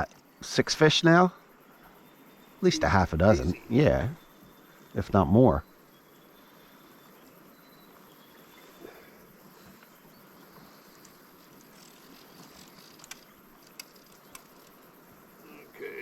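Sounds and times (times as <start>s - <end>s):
soft steady hiss: 0.0s - 16.0s
thin high tone: 2.6s - 4.2s
light clicks: 11.0s - 14.8s.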